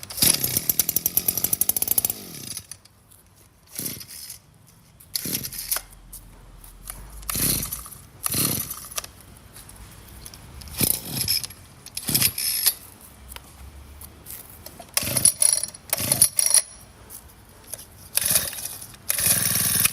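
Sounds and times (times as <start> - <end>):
recoil starter pull whirring: 0.0 - 2.9, 3.7 - 4.4, 5.1 - 6.0, 6.8 - 9.2, 10.6 - 12.8, 14.8 - 16.8, 18.1 - 19.9.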